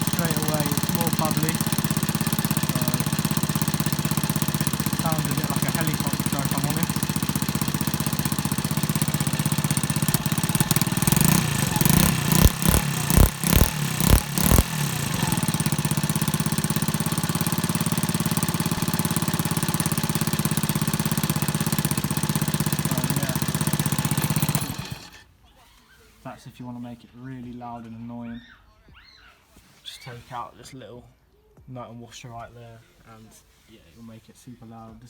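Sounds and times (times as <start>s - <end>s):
loud exhaust bursts: 0.0s - 25.2s
motorbike engine idling: 0.0s - 25.2s.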